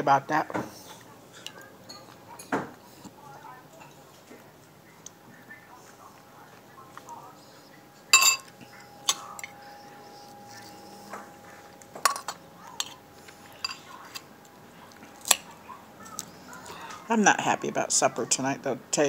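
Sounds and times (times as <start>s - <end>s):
spoon clinking against bowl: 1.4s - 2.6s, 8.1s - 13.0s, 13.6s - 14.0s.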